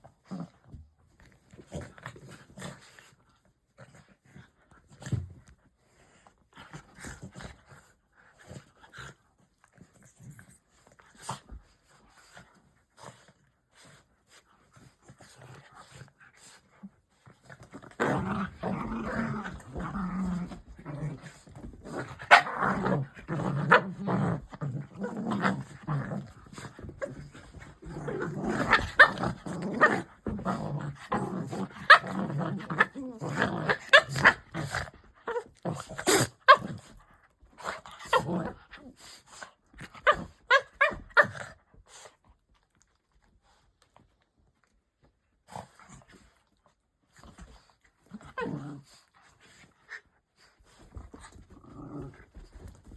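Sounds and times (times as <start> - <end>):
dog growling: 17.6 - 36.7, 48.1 - 49.0, 51.4 - 52.9.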